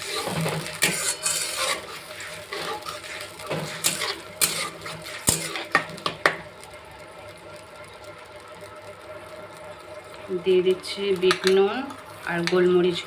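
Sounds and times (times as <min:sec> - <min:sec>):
spatula scraping a pan: 0:00.0 - 0:06.0
light sizzle: 0:00.0 - 0:13.0.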